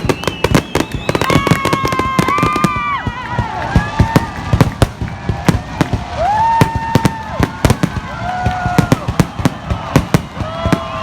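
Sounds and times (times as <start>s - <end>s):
fireworks bangs and cracks: 0.0s - 11.0s.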